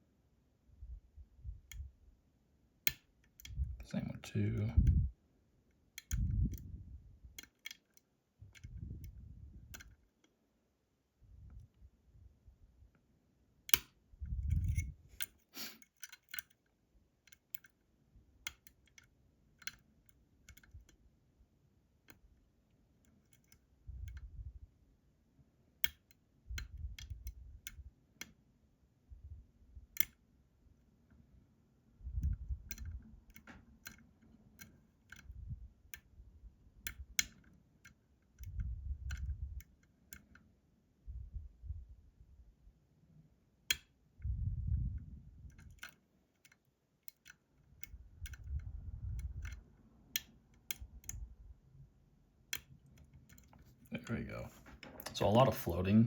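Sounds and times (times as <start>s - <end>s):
lock pick metallic clicks: 1.4s - 1.9s, 2.8s - 3.7s, 5.7s - 10.3s, 13.6s - 17.8s, 18.4s - 21.0s, 23.0s - 24.4s, 25.8s - 28.4s, 29.9s - 30.2s, 32.1s - 40.5s, 43.6s - 44.3s, 44.9s - 51.3s, 52.5s - 53.6s.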